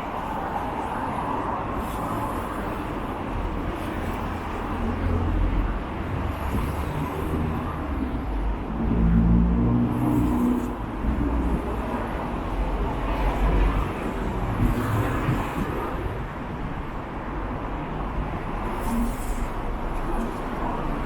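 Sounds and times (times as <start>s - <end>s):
road traffic passing: 0.0s - 21.0s
wind buffeting microphone: 10.8s - 18.7s.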